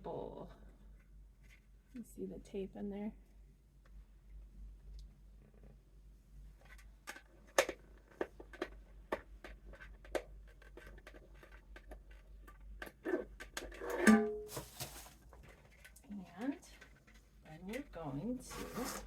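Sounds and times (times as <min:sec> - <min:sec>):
plastic dishes and tape handled: 0:06.6 - 0:19.0.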